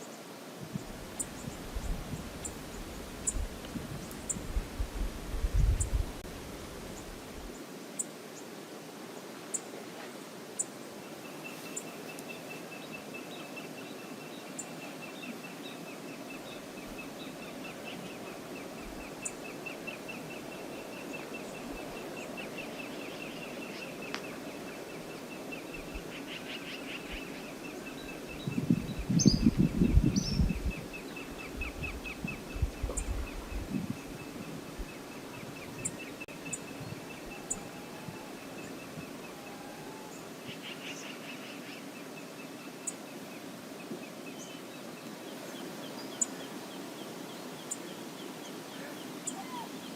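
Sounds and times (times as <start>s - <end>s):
wind buffeting microphone: 0.6s - 7.6s, 28.0s - 39.3s
river rushing: 41.2s - 49.9s.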